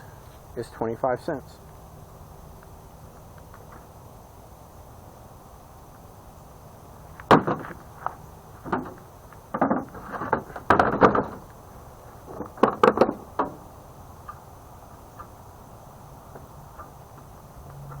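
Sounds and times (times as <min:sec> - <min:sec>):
hard objects knocking and clunking: 0:08.6 - 0:11.4, 0:12.3 - 0:13.6.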